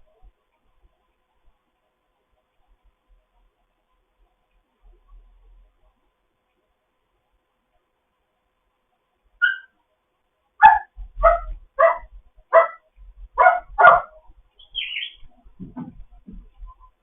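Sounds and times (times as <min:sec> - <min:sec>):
parrot mimicking dog barks: 0:09.4 - 0:09.7, 0:10.6 - 0:12.8, 0:13.4 - 0:14.2
high bird chirp: 0:14.6 - 0:15.3.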